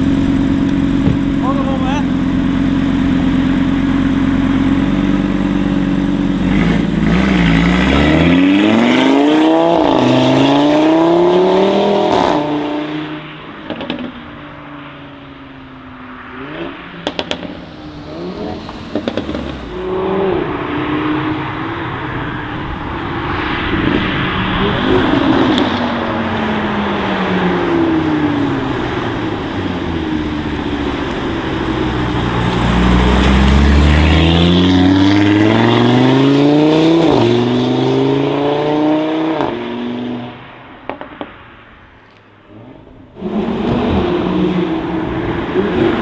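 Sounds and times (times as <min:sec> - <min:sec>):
exhaust pops: 0:00.0 - 0:09.1, 0:13.4 - 0:14.5, 0:16.6 - 0:37.5, 0:40.4 - 0:46.0
car engine idling and accelerating: 0:00.0 - 0:46.0.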